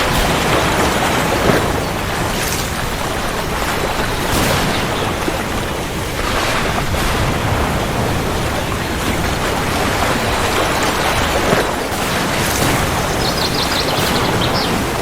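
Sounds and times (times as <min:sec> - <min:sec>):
heavy rain hiss: 0:00.0 - 0:15.0.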